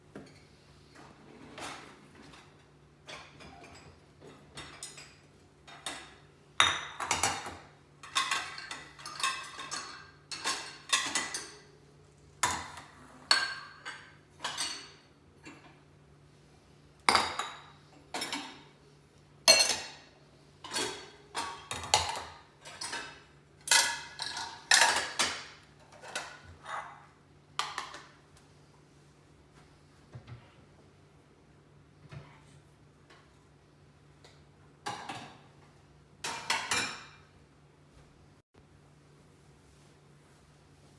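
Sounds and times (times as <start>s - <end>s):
dishes and cutlery clinking: 1.6s - 11.8s, 12.4s - 15.8s, 19.5s - 28.2s, 36.2s - 37.4s.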